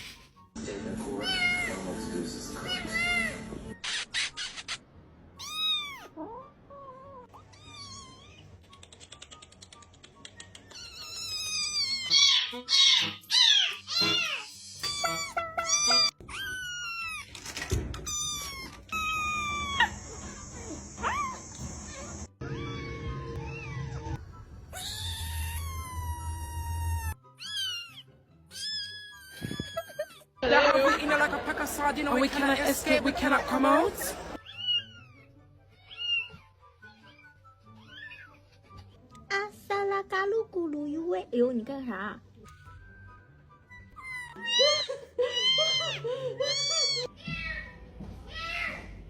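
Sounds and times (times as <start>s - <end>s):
music: 0.0s - 3.8s, 7.2s - 49.0s
cat meowing: 5.4s - 8.6s, 10.7s - 17.4s, 18.0s - 20.0s, 22.4s - 30.2s, 34.4s - 38.4s, 44.0s - 47.1s.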